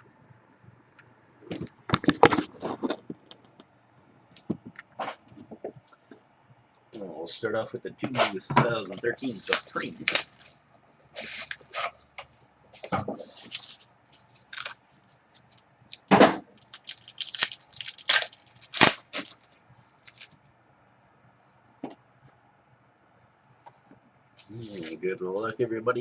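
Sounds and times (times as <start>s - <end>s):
packaging crackling and tearing: 9.3s - 10.6s, 13.2s - 20.5s.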